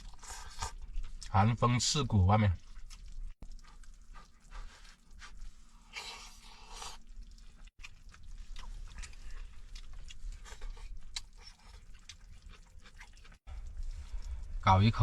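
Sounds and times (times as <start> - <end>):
chewing and crunching food: 0.0 - 15.0
steady low rumble: 13.5 - 15.0.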